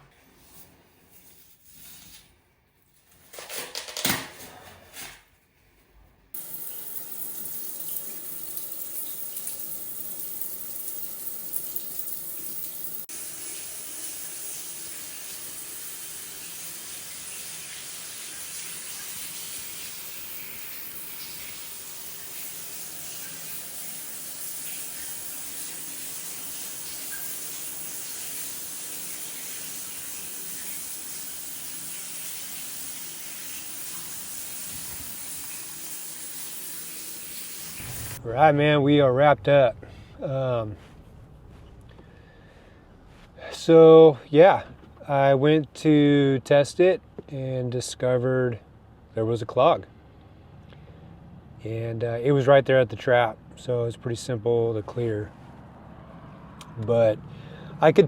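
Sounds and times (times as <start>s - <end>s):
shower water spraying: 6.4s - 38.2s.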